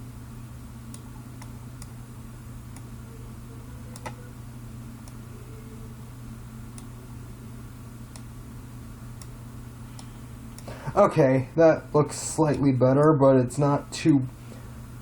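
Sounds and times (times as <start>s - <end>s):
low electrical hum: 0.0s - 15.0s
computer mouse clicking: 3.9s - 4.2s, 8.1s - 8.3s.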